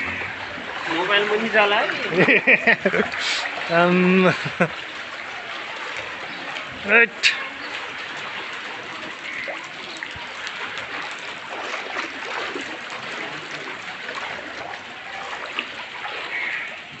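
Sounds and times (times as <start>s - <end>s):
floodwater rushing: 0.0s - 17.0s
water splashes and drips: 0.0s - 17.0s.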